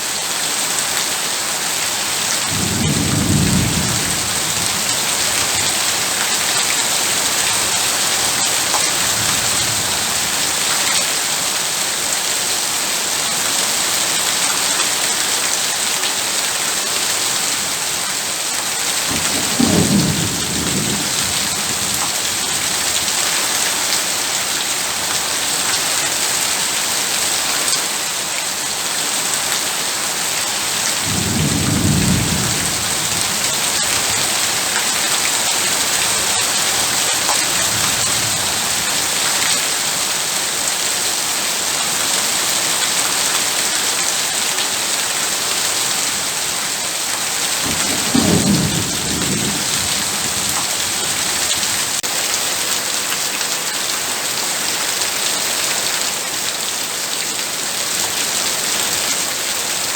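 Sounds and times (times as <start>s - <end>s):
heavy rain pouring: 0.0s - 59.9s
low rolls of thunder: 2.5s - 5.9s, 19.1s - 22.6s, 31.0s - 34.5s, 47.6s - 51.8s.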